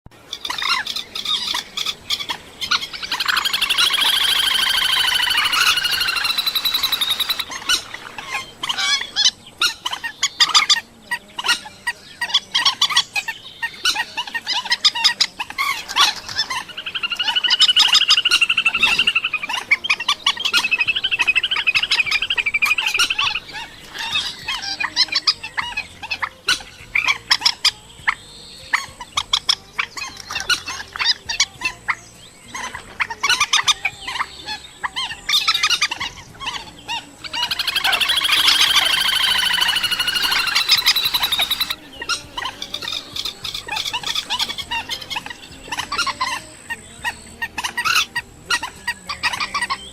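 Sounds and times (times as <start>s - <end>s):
bird harsh nasal calls: 0.1s - 49.9s
bird clicking cackle notes: 0.3s - 27.8s, 35.0s - 46.8s.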